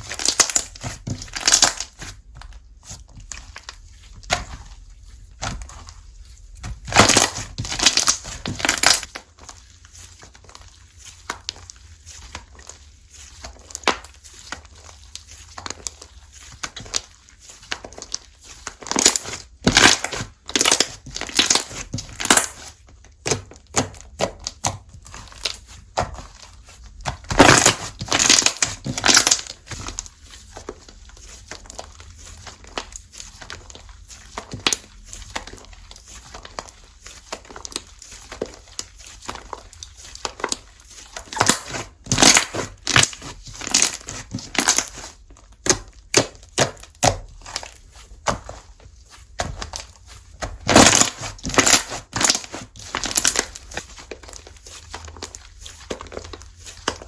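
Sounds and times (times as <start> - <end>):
slime squeezed by hand: 35.5 - 57.0.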